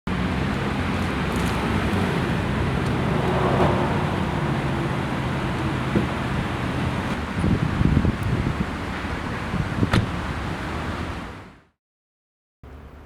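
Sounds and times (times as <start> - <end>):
car engine idling: 0.1 - 7.3.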